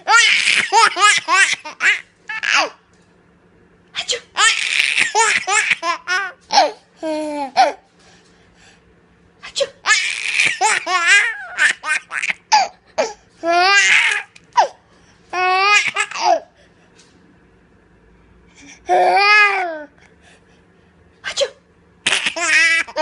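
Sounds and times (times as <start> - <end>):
baby laughing: 0.0 - 2.8, 4.3 - 7.8, 9.7 - 14.8, 15.4 - 16.5, 22.0 - 23.0.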